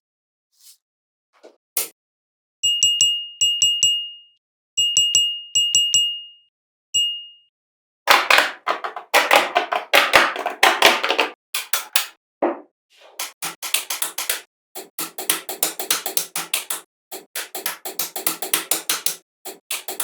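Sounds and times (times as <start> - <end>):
high ding chime: 2.6 - 7.5.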